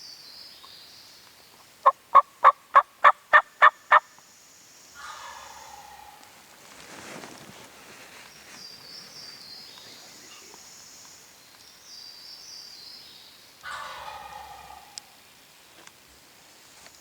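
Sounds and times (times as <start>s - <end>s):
turkey gobbling: 5.0s - 6.2s, 13.6s - 15.2s
small bird singing: 8.2s - 14.1s.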